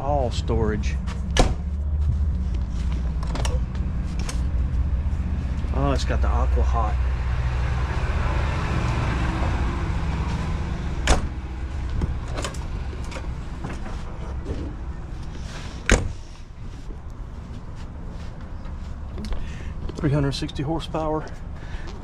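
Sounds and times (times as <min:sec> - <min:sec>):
low rumble: 0:00.0 - 0:15.4
storage bay doors shutting: 0:10.2 - 0:14.9.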